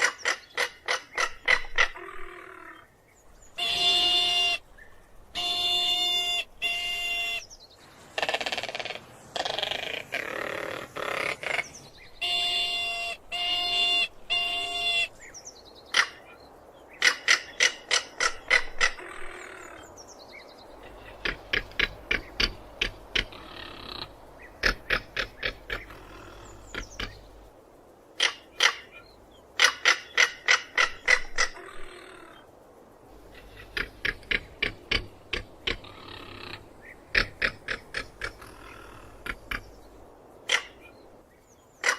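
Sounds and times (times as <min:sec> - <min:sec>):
bird harsh calls: 0:00.0 - 0:27.5, 0:28.2 - 0:32.5, 0:33.1 - 0:41.9
bird short pitched calls: 0:03.5 - 0:04.6.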